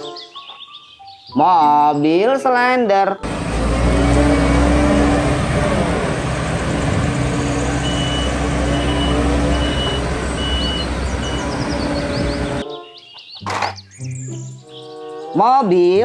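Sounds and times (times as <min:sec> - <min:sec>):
truck engine running: 0:03.2 - 0:12.6
reversing alarm beeps: 0:07.8 - 0:12.4.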